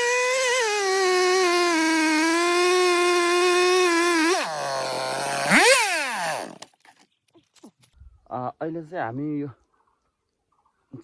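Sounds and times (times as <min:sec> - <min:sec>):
chainsaw revving and idling: 0:00.0 - 0:06.7.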